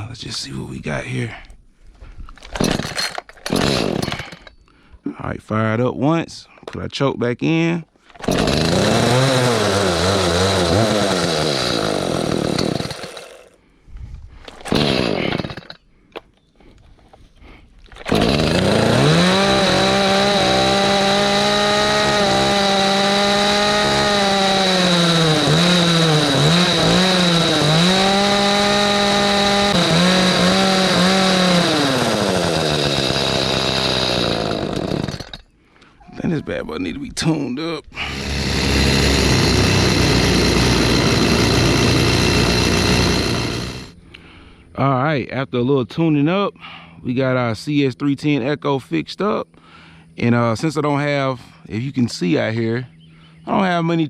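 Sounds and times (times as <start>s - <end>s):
chainsaw engine running unevenly: 2.6s - 4.5s, 8.1s - 13.6s, 14.6s - 15.8s, 18.0s - 35.4s, 38.0s - 44.0s.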